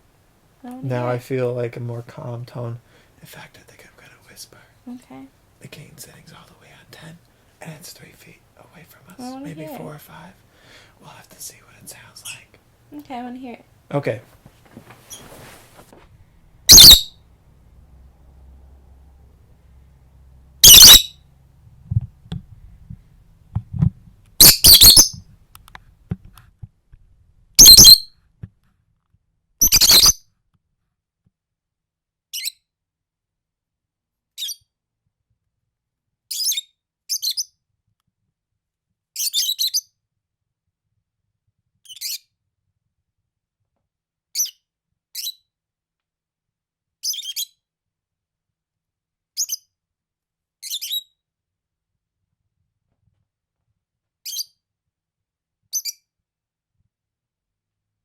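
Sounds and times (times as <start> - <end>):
birds squawking harshly: 16.7 - 17.1, 20.6 - 21.1, 24.4 - 25.1, 27.6 - 28.0, 29.6 - 30.2
high-pitched bird chirps: 16.7 - 17.2, 20.6 - 21.2, 24.4 - 25.2, 27.6 - 28.1, 29.6 - 30.2, 50.6 - 51.1, 55.7 - 56.0.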